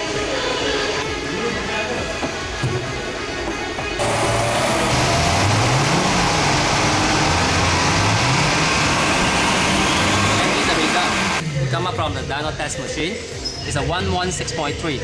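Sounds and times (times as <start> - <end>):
background music: 0.0 - 15.0
car engine revving on rollers: 4.0 - 11.4.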